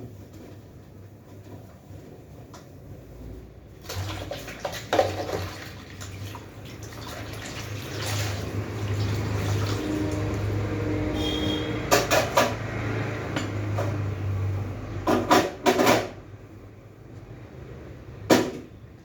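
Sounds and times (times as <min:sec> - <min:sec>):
tap water running into sink: 0:03.8 - 0:10.6.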